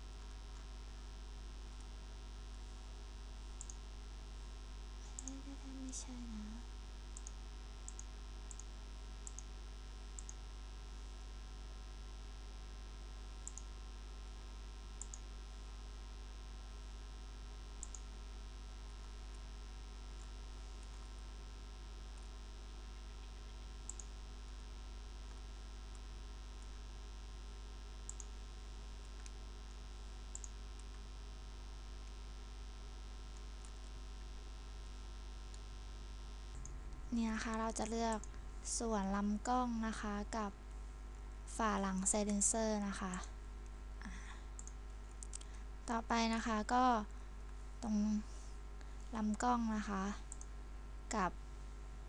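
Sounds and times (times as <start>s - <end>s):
low mains hum: 0.0s - 52.0s
computer mouse clicks: 3.6s - 3.8s, 5.1s - 5.4s, 7.1s - 9.5s, 10.2s - 10.4s, 13.4s - 13.7s, 15.0s - 15.3s, 17.8s - 18.1s, 23.8s - 24.1s, 28.0s - 28.4s, 29.0s - 31.0s, 36.5s - 38.4s, 44.6s - 45.6s, 50.3s - 50.5s.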